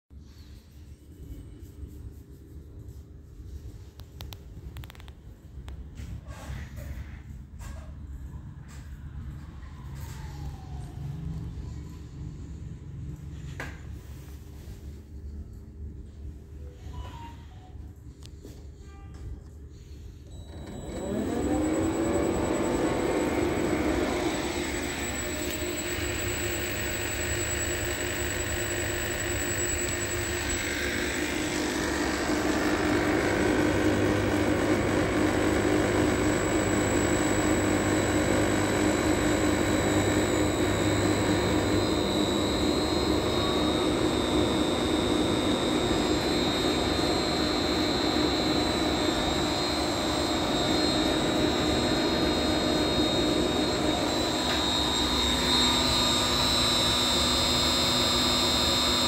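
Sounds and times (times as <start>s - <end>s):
high-pitched electrical whine: 20.2s - 59.0s
electric motor running: 20.5s - 59.0s.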